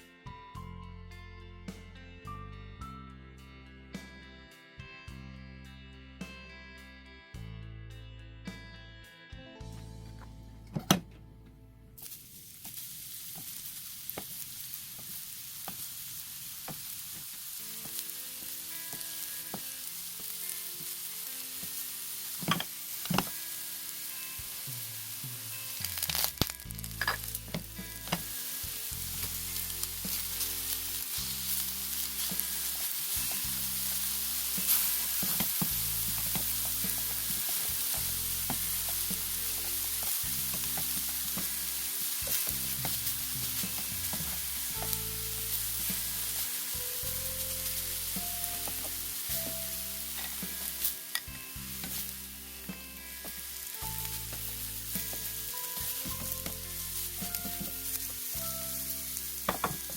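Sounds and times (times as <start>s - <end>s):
roots sizzling in a pan: 12.0s - 59.9s.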